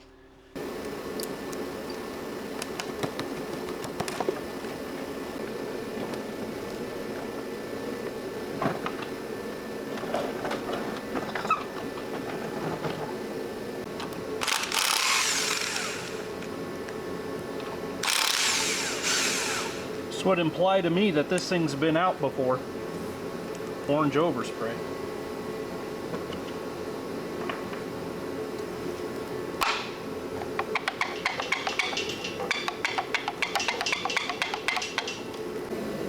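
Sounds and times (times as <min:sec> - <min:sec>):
low mechanical hum: 0:00.0 - 0:36.0
power tool burst: 0:14.4 - 0:16.4, 0:18.0 - 0:20.0.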